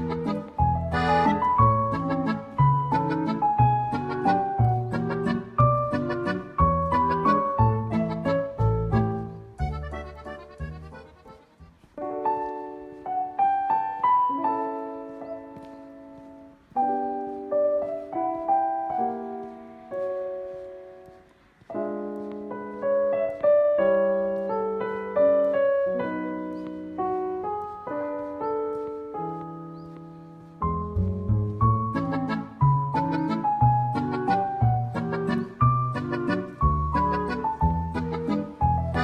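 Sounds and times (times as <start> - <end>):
slow solo piano: 12.0 - 39.0.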